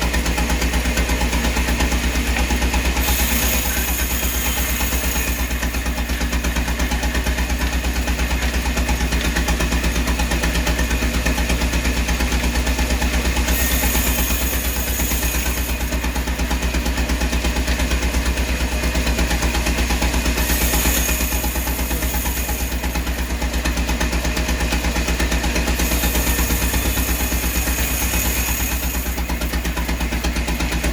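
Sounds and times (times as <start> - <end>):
engine running steadily: 0.0 - 30.9
hiss: 2.5 - 6.4, 13.4 - 16.0, 19.1 - 23.8, 24.8 - 30.2.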